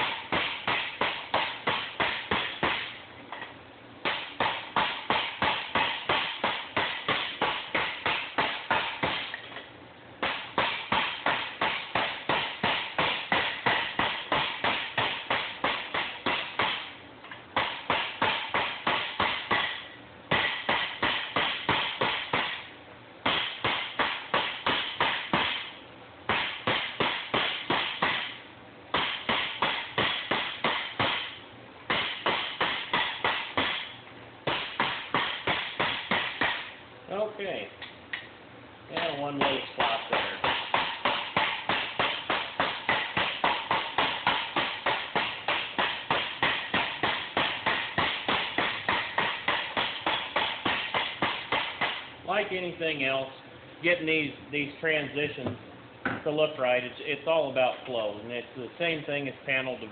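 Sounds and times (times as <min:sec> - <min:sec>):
hammer tapping on metal tube: 0:00.0 - 0:09.4, 0:10.2 - 0:22.6, 0:39.0 - 0:52.0.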